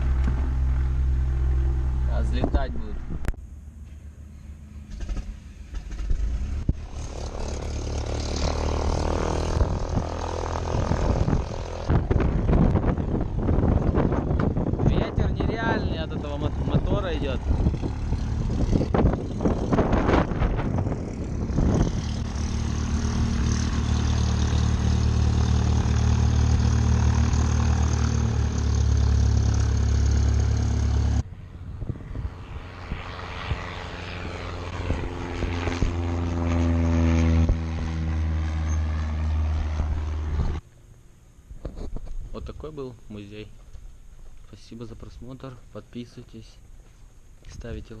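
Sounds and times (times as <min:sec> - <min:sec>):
prop wash wind on microphone: 0:00.0 - 0:03.4, 0:05.8 - 0:40.6
propeller plane engine drone: 0:00.0 - 0:48.0.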